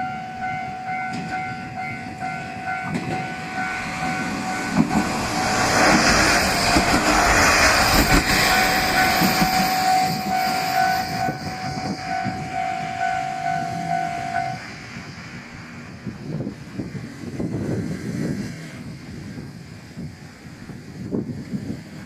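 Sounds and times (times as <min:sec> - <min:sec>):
level crossing warning bell: 0:00.0 - 0:05.4, 0:06.3 - 0:14.6
diesel railcar passing: 0:00.0 - 0:22.0.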